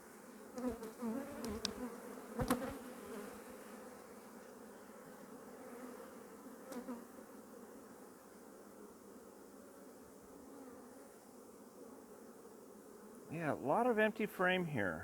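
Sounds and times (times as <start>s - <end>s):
bees buzzing: 0.4s - 15.0s.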